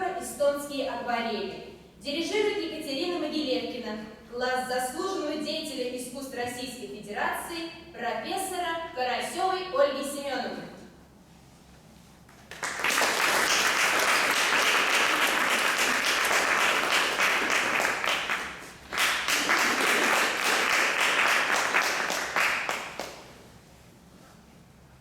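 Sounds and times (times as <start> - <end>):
audience applauding: 12.4 - 23.3.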